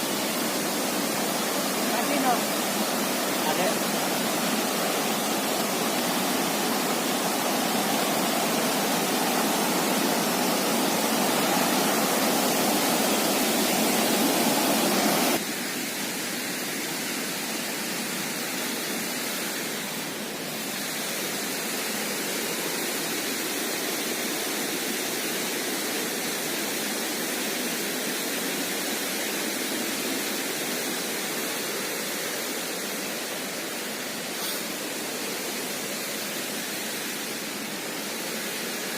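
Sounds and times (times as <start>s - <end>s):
stream rushing at a waterfall: 0.0s - 38.9s.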